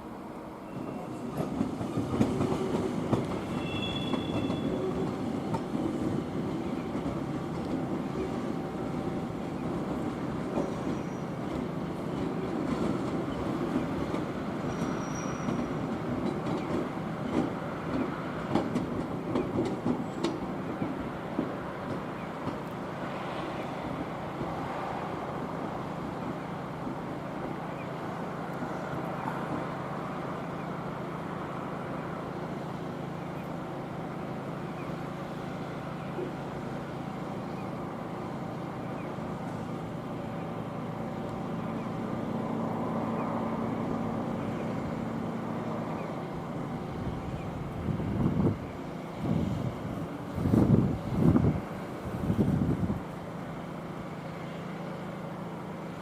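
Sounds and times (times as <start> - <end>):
railway machinery hum: 0.0 - 56.0
wind buffeting microphone: 46.5 - 53.2.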